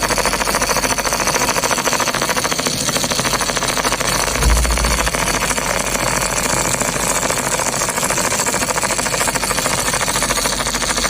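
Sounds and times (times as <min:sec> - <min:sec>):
low bump: 0:04.3 - 0:06.0.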